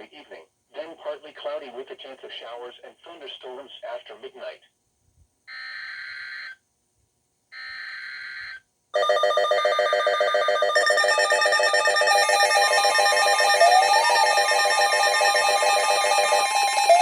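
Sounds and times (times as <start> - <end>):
electronic alert alarm: 9.0 - 17.0.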